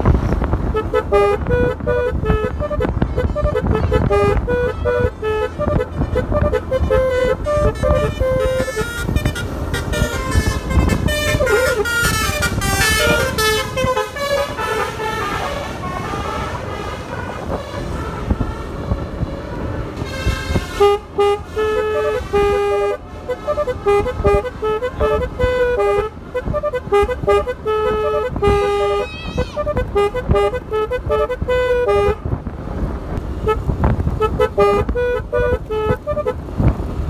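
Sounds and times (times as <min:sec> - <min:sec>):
multi-tone horn melody: 0:00.0 - 0:32.3, 0:33.2 - 0:37.0
engine and road rumble: 0:00.0 - 0:37.0.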